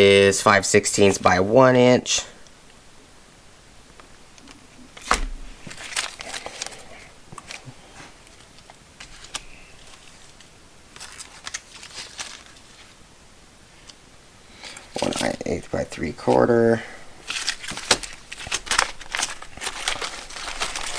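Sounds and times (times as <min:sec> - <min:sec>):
plastic packaging crinkling: 0:04.9 - 0:13.0, 0:14.6 - 0:20.9.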